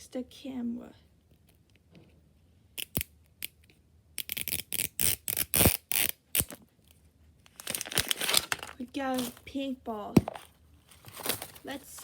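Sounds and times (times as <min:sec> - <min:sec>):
plastic packaging clicks: 0:07.5 - 0:09.4
plastic packaging crinkling: 0:07.5 - 0:09.6, 0:10.2 - 0:12.0.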